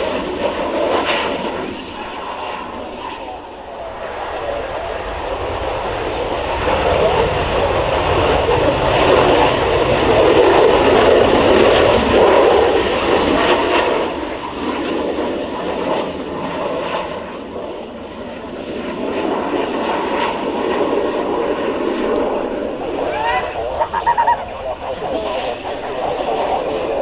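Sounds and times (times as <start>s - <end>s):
jet engine rushing noise: 0.0s - 27.0s.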